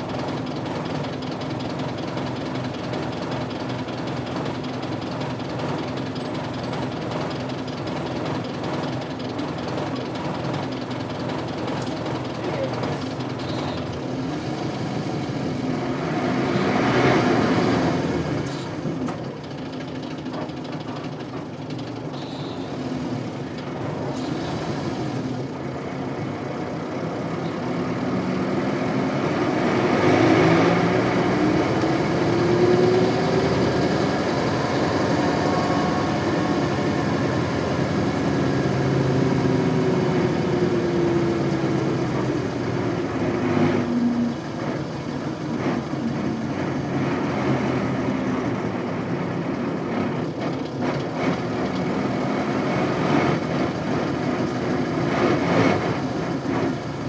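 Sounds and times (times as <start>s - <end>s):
diesel bus engine running: 0.0s - 57.0s.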